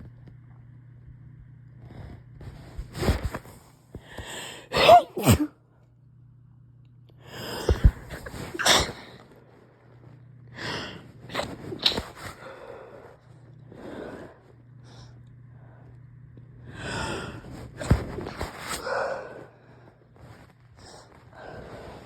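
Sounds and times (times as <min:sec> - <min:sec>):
person sneezing: 0:04.6 - 0:05.6, 0:07.8 - 0:09.2, 0:11.3 - 0:12.4.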